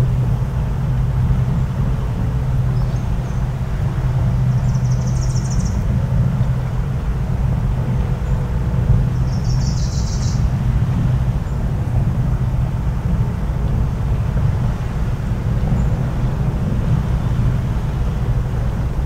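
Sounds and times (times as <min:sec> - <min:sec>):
low rumble: 0:00.0 - 0:19.0
bird trill: 0:04.5 - 0:05.8, 0:09.2 - 0:10.4.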